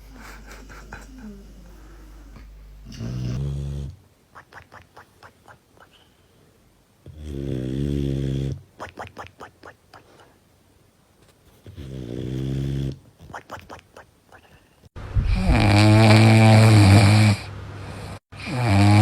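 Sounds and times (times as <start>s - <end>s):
dogs snoring: 0.0s - 4.0s, 7.0s - 8.6s, 11.7s - 13.0s, 15.3s - 17.5s, 18.1s - 19.0s
soft clicking breaths: 4.5s - 6.6s, 9.6s - 10.4s.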